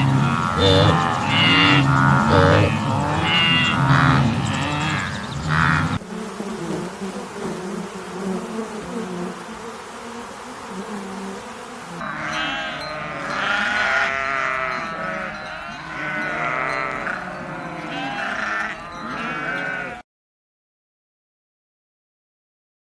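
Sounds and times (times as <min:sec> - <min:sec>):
cow mooing: 0:00.0 - 0:06.0, 0:12.0 - 0:20.0
sheep bleating: 0:00.0 - 0:06.0, 0:12.0 - 0:20.0.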